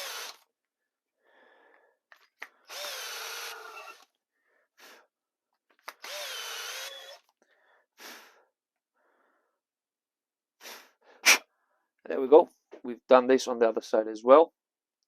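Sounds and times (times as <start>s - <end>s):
power drill spinning: 0.0s - 0.5s, 2.1s - 4.2s, 5.7s - 7.4s.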